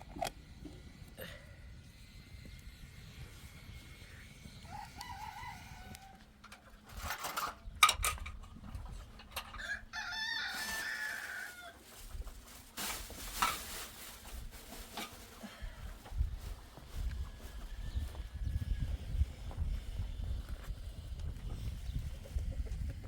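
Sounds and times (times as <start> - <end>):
rooster crowing: 4.6 - 6.3, 9.6 - 11.8.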